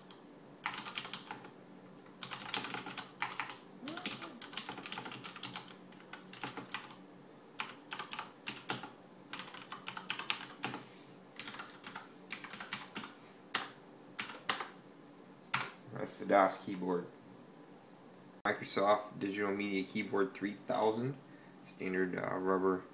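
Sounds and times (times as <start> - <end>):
mechanical keyboard typing: 0.0 - 1.5, 2.2 - 7.0, 7.6 - 10.8, 11.4 - 14.8.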